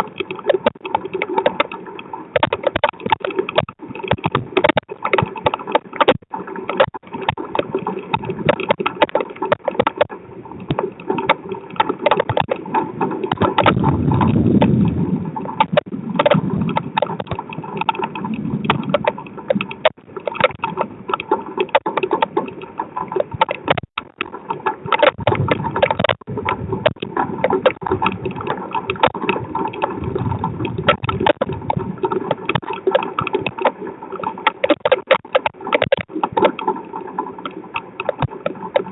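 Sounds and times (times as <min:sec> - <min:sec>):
rain pelting a camera: 0:00.0 - 0:38.9
low rumble: 0:13.8 - 0:16.8.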